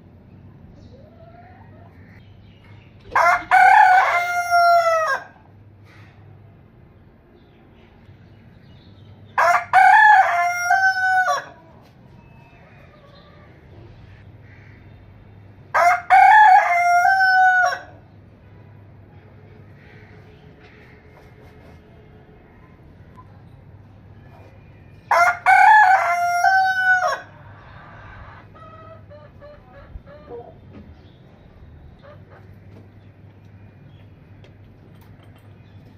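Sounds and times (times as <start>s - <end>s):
rooster crowing: 3.1s - 5.4s, 9.4s - 11.6s, 15.7s - 18.0s, 25.1s - 28.7s.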